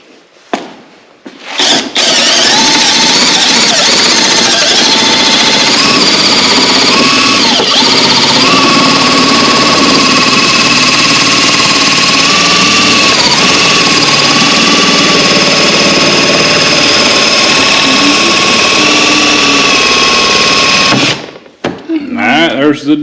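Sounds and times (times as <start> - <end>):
electric metal cutters whining: 1.6 - 21.4.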